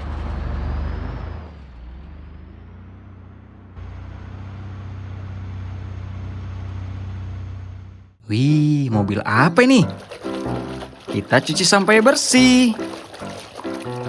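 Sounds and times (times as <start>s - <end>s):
truck engine drone: 0.0s - 8.2s.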